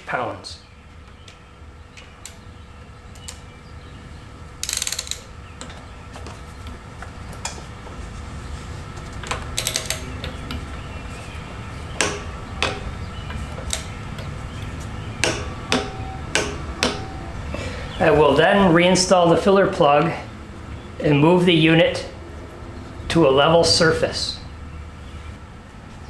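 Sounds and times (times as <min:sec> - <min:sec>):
torque wrench ratcheting: 0:04.6 - 0:05.3, 0:09.6 - 0:10.1
tool clicking on metal: 0:09.6 - 0:10.6, 0:12.0 - 0:14.3, 0:15.2 - 0:17.1.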